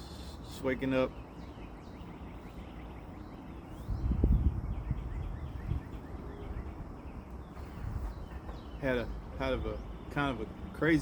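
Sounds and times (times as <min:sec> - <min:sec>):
faint bird chirps: 0:00.0 - 0:10.8
outdoor background noise: 0:00.0 - 0:11.0
low rumble on microphone: 0:03.7 - 0:10.0.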